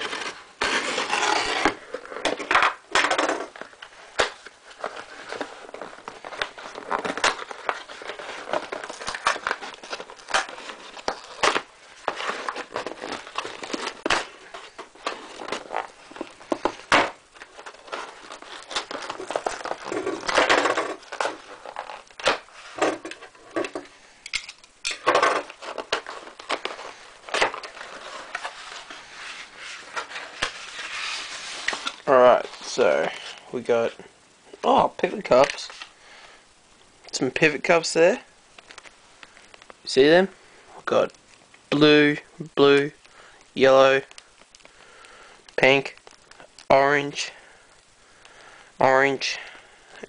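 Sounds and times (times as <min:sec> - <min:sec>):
plastic wrapping crinkling: 0:00.0 - 0:36.2, 0:38.4 - 0:39.9, 0:42.8 - 0:47.1.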